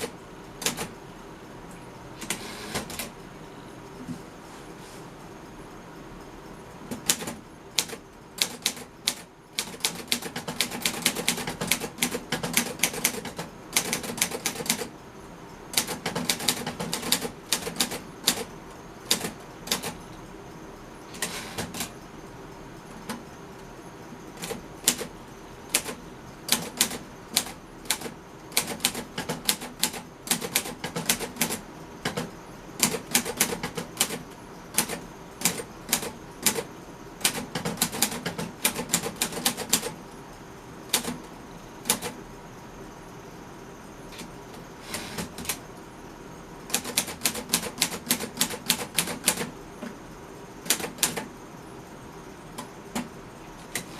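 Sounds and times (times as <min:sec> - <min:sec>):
typewriter keystrokes clacking: 0:00.0 - 0:00.9, 0:06.9 - 0:14.9, 0:15.7 - 0:18.5, 0:19.1 - 0:20.0, 0:24.4 - 0:25.1, 0:25.7 - 0:34.2, 0:34.8 - 0:40.0, 0:40.9 - 0:41.2, 0:41.8 - 0:42.2, 0:46.7 - 0:49.5, 0:50.7 - 0:51.3.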